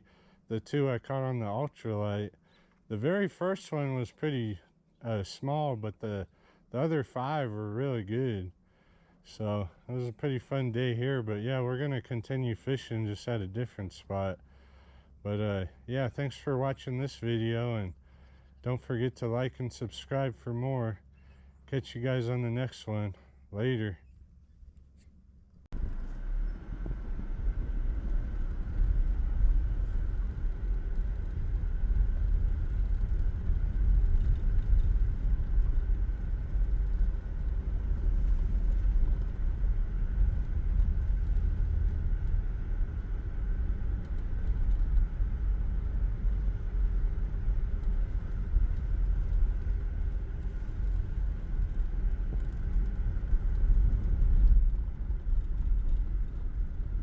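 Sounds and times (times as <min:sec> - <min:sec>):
faint steady hum: 0:00.0 - 0:57.0
vehicle road and engine rumble: 0:24.3 - 0:57.0.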